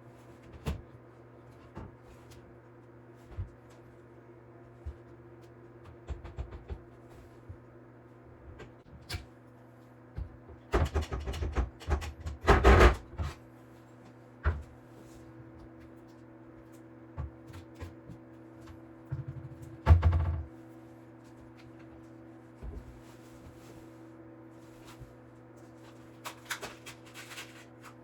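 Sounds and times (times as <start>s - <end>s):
steady low hum: 0.0s - 28.0s
cabinet doors knocking and clattering: 10.8s - 13.3s.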